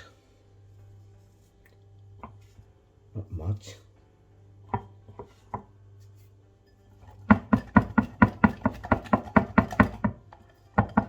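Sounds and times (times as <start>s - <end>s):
utensil beating batter in bowl: 7.0s - 11.0s.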